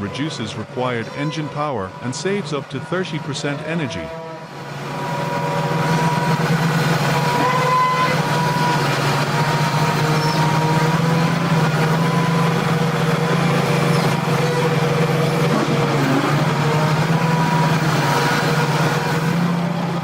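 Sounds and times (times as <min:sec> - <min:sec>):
material handler engine drone: 0:00.0 - 0:20.0.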